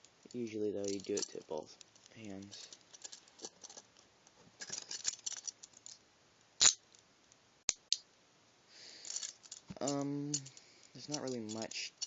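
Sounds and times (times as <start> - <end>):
metal handcuffs clicking: 0.8 - 3.8, 4.6 - 6.0, 9.0 - 12.0.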